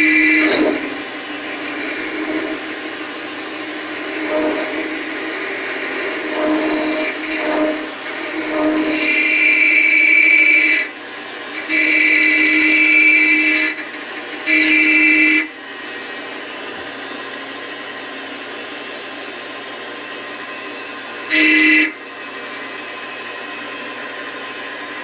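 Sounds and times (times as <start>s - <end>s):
lathe tool squealing on metal: 0.0s - 10.9s, 11.5s - 15.5s, 21.3s - 22.0s
lathe running: 0.0s - 16.8s.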